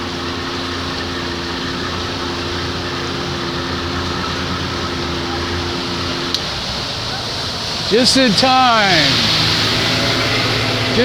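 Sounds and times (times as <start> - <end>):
outboard motor running: 0.0 - 11.0
water and wind hiss: 0.0 - 11.0.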